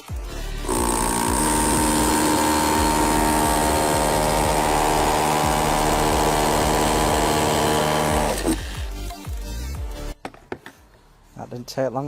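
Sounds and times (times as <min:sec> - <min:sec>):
rotary hammer drilling: 0:00.5 - 0:08.8.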